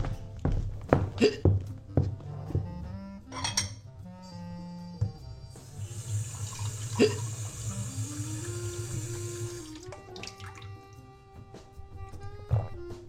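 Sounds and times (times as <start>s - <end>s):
background music: 0.0s - 13.0s
tap running into sink: 5.8s - 10.6s.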